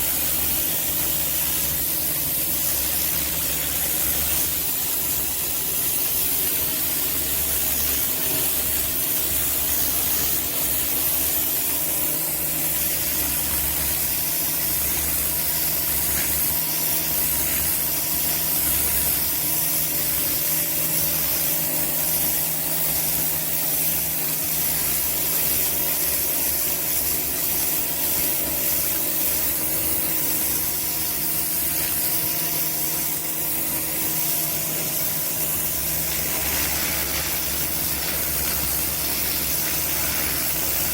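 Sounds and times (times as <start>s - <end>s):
electric motor and pump hum: 0.0s - 40.9s
pressure washer water spray hiss: 0.0s - 40.9s.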